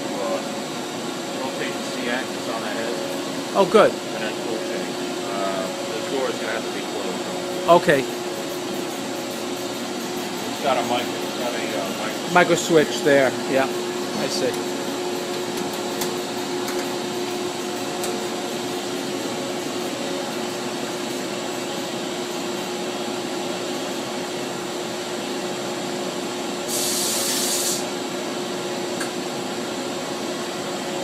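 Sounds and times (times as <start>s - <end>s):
machine humming steadily: 0.0s - 31.0s
sharp hiss: 26.7s - 27.9s.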